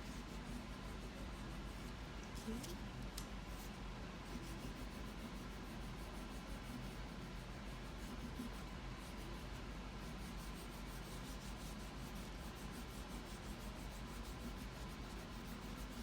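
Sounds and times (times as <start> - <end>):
crayon rubbing on wood: 4.3 - 16.0.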